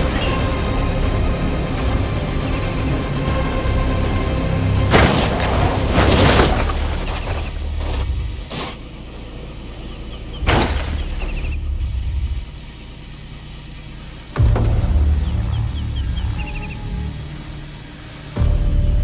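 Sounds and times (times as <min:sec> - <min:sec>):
dramatic background music: 0:00.0 - 0:08.5, 0:13.8 - 0:19.0
heavy boom and crash effects: 0:00.0 - 0:08.5, 0:14.4 - 0:19.0.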